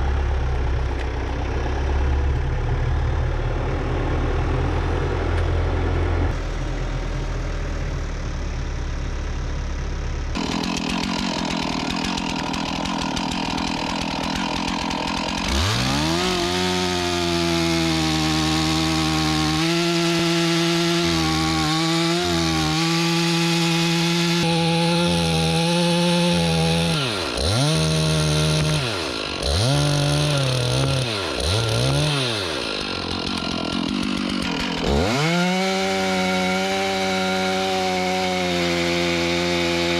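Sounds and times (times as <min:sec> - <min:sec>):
engine running at low speed: 0:00.0 - 0:10.5
chainsaw cutting logs: 0:10.3 - 0:39.9.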